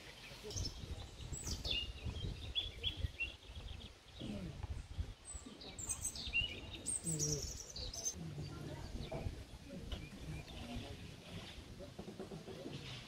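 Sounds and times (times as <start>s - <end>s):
songbirds chirping: 0.0s - 13.0s.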